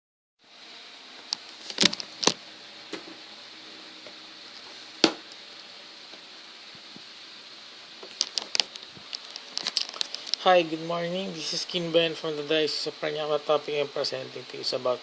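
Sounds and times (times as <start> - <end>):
steady hiss: 0.4 - 15.0.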